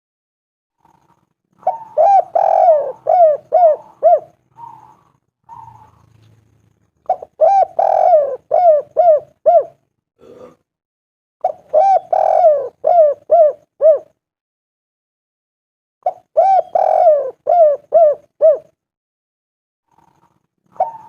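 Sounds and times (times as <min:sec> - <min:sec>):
dove cooing: 0:00.8 - 0:06.4, 0:07.0 - 0:09.8, 0:11.4 - 0:14.2, 0:16.0 - 0:18.8, 0:19.9 - 0:21.0.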